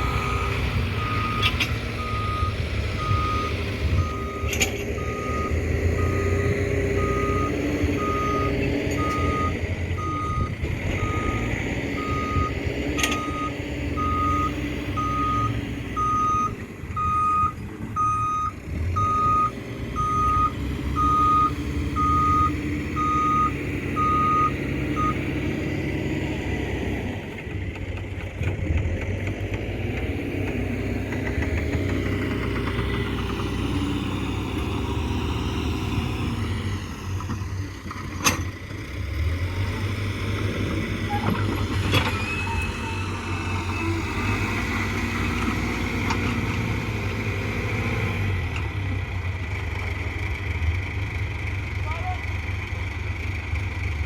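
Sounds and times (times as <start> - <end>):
reversing alarm beeping: 0.0 - 25.3
diesel engine running: 0.0 - 54.0.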